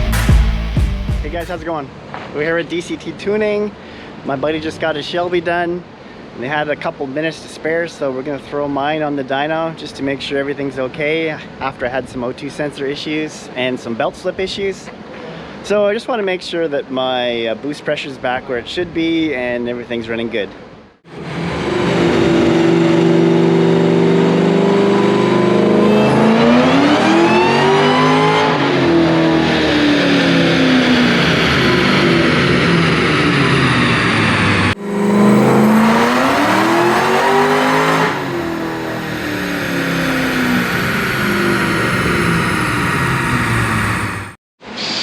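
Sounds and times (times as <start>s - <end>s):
supercharged car engine revving: 21.1s - 45.0s.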